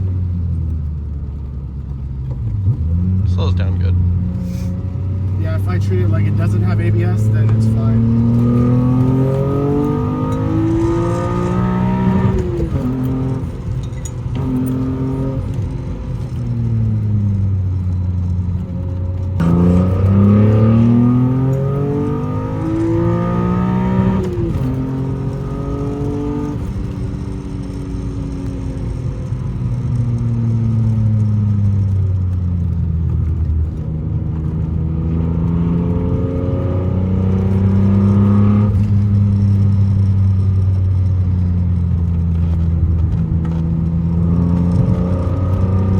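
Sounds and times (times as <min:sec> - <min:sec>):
car engine revving hard: 0:02.6 - 0:28.8, 0:33.3 - 0:39.8, 0:42.1 - 0:45.9.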